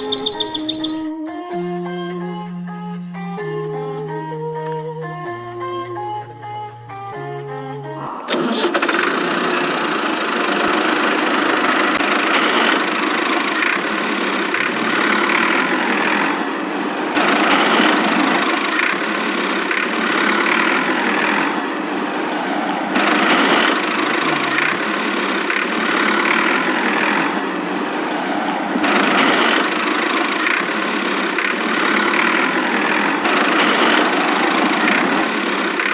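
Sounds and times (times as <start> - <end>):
vehicle engine running: 0.0 - 1.0, 8.3 - 35.9.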